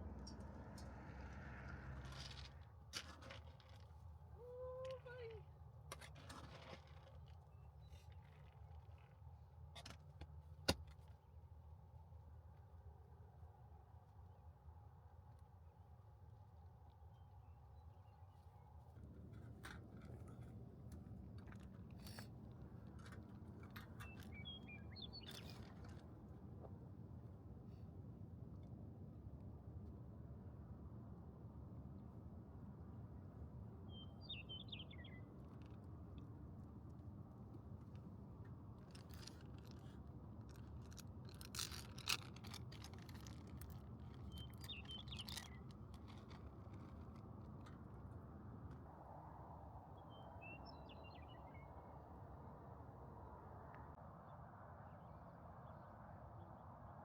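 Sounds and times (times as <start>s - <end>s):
low steady rumble: 0.0s - 6.0s
faint bird chirping: 23.9s - 25.7s, 33.9s - 35.4s.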